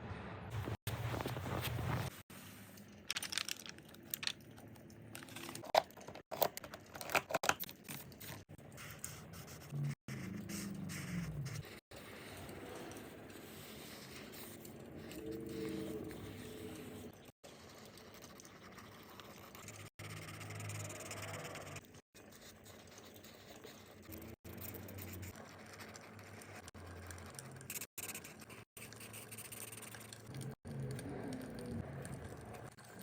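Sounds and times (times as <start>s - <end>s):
scratching of coloring on paper: 8.3s - 17.2s, 19.1s - 30.5s.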